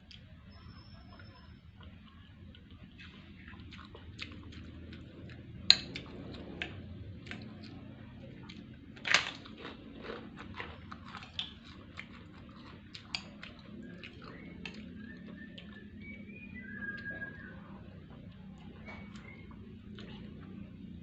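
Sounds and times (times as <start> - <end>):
wet chewing: 1.1 - 20.8
crackers crunching: 2.5 - 16.1.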